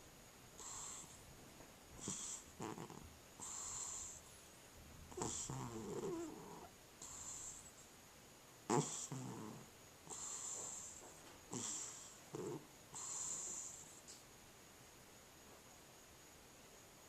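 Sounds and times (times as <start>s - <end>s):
cat snoring: 0.6s - 1.2s, 2.0s - 4.2s, 5.1s - 7.7s, 8.7s - 14.0s.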